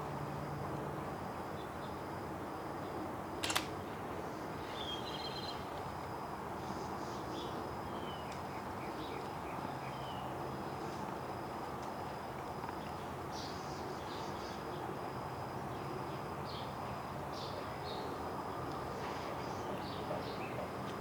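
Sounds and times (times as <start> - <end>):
outdoor background noise: 0.0 - 21.0
sharp click: 3.4 - 3.8.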